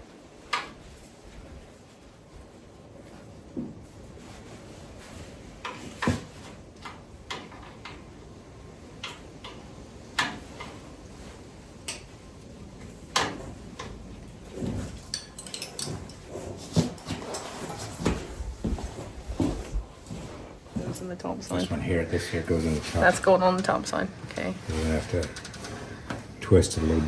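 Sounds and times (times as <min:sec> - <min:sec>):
hand tools clicking and clanking: 0:13.1 - 0:18.1, 0:20.1 - 0:22.6, 0:24.6 - 0:27.0.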